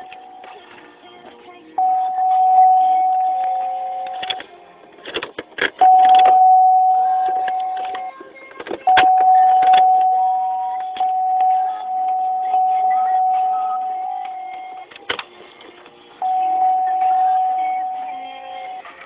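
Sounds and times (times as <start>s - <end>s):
car warning chime: 1.8s - 4.2s, 5.8s - 7.9s, 8.9s - 14.8s, 16.2s - 18.4s.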